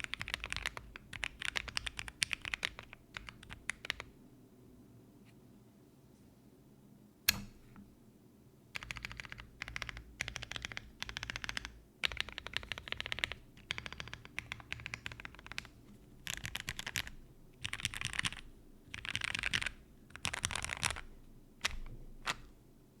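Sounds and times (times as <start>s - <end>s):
mechanical keyboard typing: 0.0s - 4.1s, 8.8s - 22.5s.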